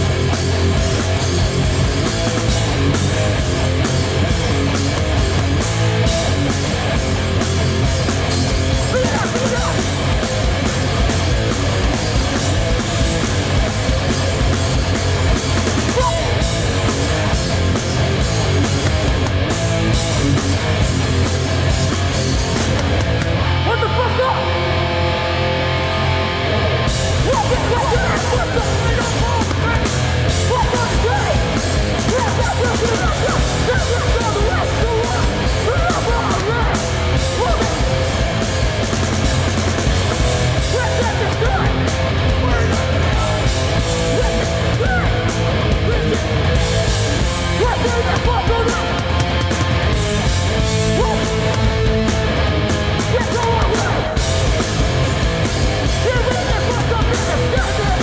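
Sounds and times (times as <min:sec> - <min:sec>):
bass: 0:00.0 - 0:58.0
distorted electric guitars: 0:00.0 - 0:58.0
drums: 0:00.0 - 0:58.0
shouted vocals: 0:08.7 - 0:10.2, 0:15.7 - 0:16.6, 0:23.6 - 0:24.8, 0:25.9 - 0:38.4, 0:40.4 - 0:49.4, 0:50.7 - 0:54.4, 0:55.8 - 0:58.0.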